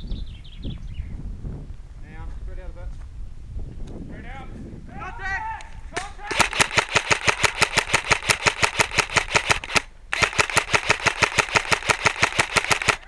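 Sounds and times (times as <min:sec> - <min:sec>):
airsoft rifle full-auto bursts: 0:06.3 - 0:13.0.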